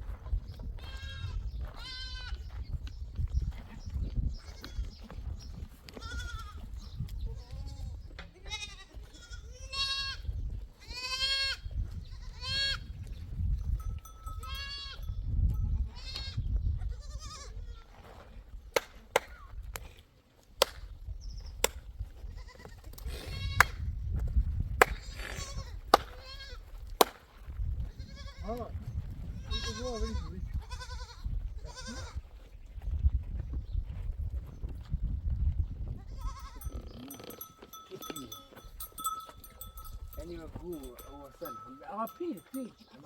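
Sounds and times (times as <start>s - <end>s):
goats bleating: 0.8s - 2.4s, 5.9s - 6.7s, 7.4s - 12.9s, 14.4s - 15.1s, 15.8s - 18.0s, 25.0s - 26.7s, 29.4s - 32.2s, 36.0s - 39.9s.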